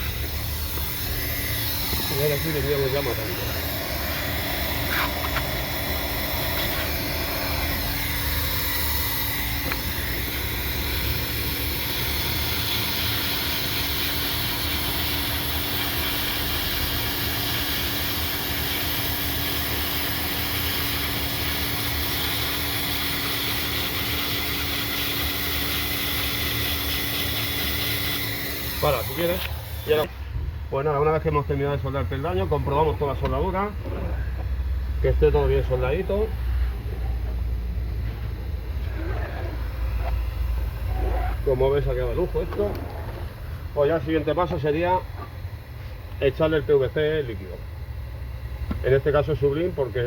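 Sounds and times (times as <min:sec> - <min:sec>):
hot-air welding gun hissing: 0:00.0 - 0:30.2.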